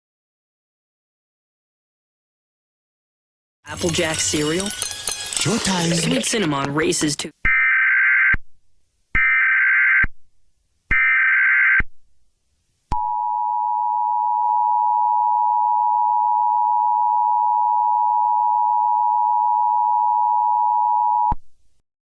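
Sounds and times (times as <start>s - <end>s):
shrill digital data tones: 3.7s - 6.6s.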